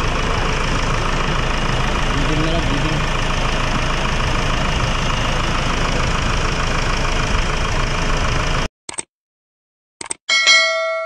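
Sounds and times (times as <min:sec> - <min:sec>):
engine idling: 0:00.0 - 0:08.7.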